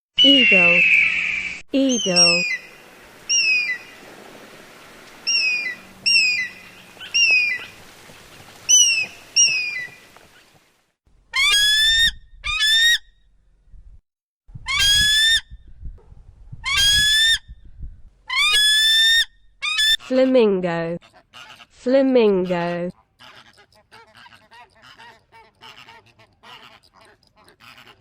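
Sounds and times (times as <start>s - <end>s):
eagle screeching calls: 0.2s - 4.0s, 5.2s - 7.8s, 8.7s - 10.0s, 11.3s - 13.1s, 14.7s - 15.5s, 16.6s - 17.5s, 18.3s - 20.1s
large bird rising calls: 0.2s - 10.1s.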